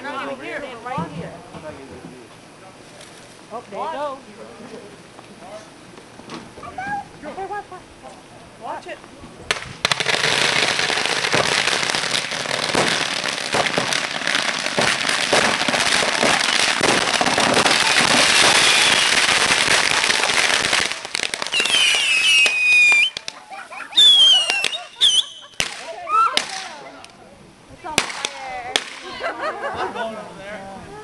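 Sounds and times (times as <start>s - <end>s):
firecrackers crackling bangs: 9.4s - 26.8s, 27.8s - 29.2s
fireworks whistling: 9.5s - 26.8s.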